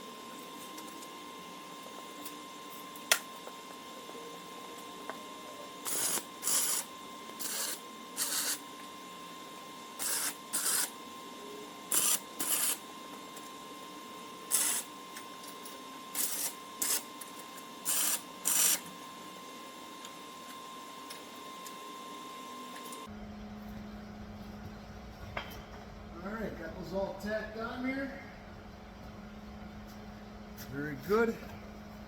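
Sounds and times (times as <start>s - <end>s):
welding crackle bursts: 5.8s - 8.6s, 10.0s - 11.0s, 11.9s - 12.8s, 14.5s - 14.9s, 16.1s - 18.9s.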